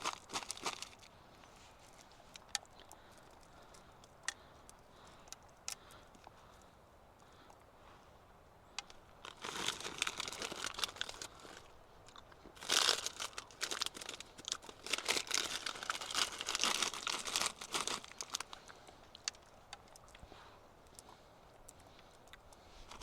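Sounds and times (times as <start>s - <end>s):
plastic packet crinkling: 0.0s - 1.1s, 9.2s - 11.6s, 12.6s - 18.6s.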